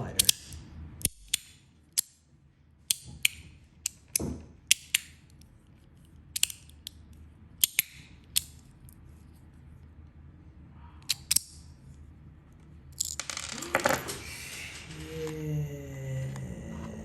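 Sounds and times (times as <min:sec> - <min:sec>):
metal fidget slider clicks: 0:00.2 - 0:02.1, 0:06.4 - 0:06.7, 0:11.1 - 0:11.5.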